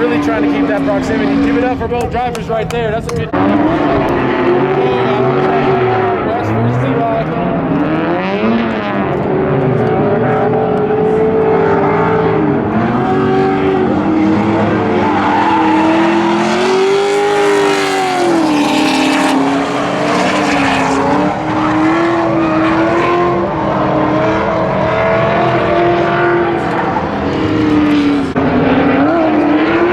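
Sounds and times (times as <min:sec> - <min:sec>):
car engines revving: 0:00.0 - 0:29.9.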